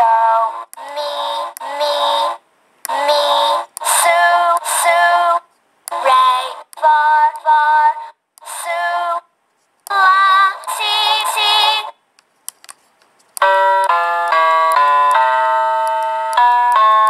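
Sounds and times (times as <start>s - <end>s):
keyboard playing voice samples: 0.0s - 8.8s.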